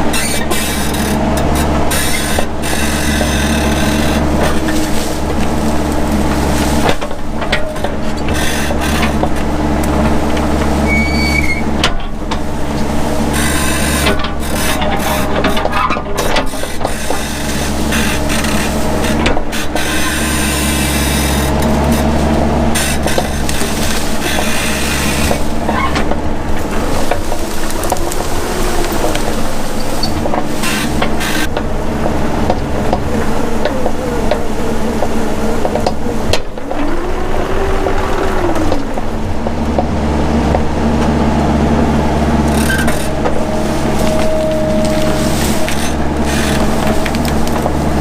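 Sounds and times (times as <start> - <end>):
brush scraping and crackling: 0.0 - 48.0
excavator engine running: 0.0 - 48.0.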